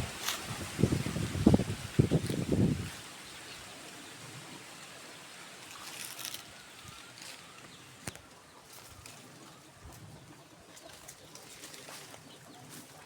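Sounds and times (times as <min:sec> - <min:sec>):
wind hiss: 0:00.0 - 0:04.7
brief rustle: 0:05.6 - 0:07.4.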